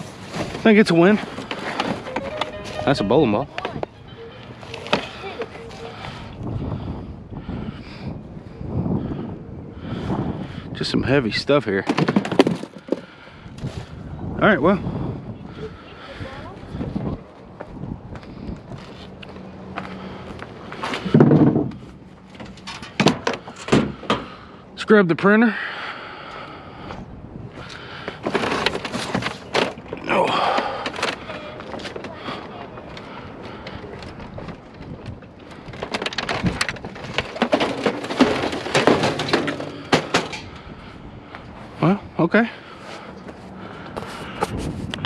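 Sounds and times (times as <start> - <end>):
junk knocking and clanking: 11.8 - 13.2, 20.8 - 24.4, 27.9 - 40.9.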